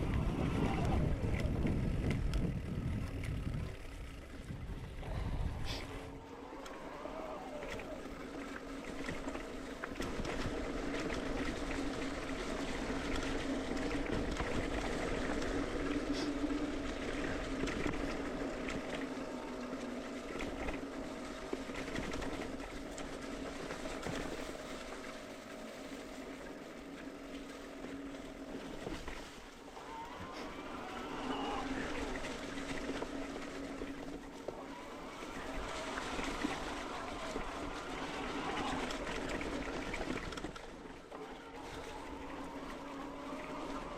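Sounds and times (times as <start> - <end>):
wind on microphone: 0.0 - 6.2
bike tyre hum on dirt: 0.0 - 43.9.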